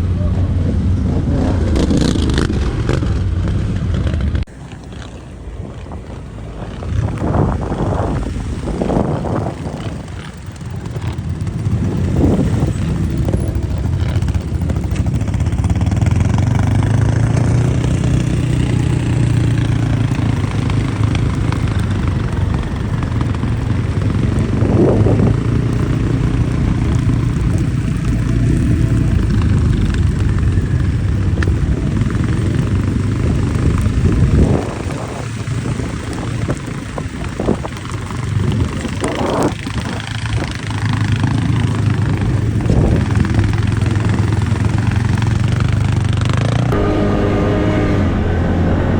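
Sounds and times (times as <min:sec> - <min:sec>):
quad bike engine running: 0:00.0 - 0:48.9.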